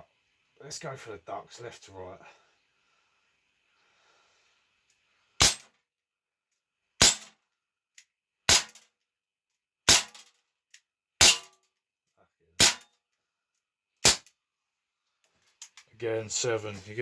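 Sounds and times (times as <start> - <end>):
air pistol shots: 5.4 - 5.7, 7.0 - 7.3, 8.5 - 8.8, 9.9 - 10.2, 11.2 - 11.5, 12.6 - 12.8, 14.0 - 14.3
pellets hitting metal targets: 5.4 - 5.7, 7.0 - 7.4, 8.5 - 8.8, 9.9 - 10.3, 11.2 - 11.6, 12.6 - 12.9, 14.0 - 14.3.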